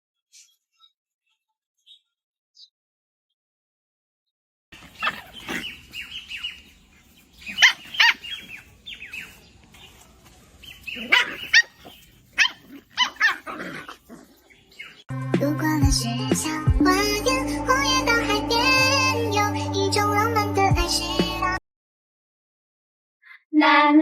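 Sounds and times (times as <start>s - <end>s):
puppy yipping and whimpering: 5.0s - 6.5s, 7.4s - 8.7s, 10.9s - 14.0s.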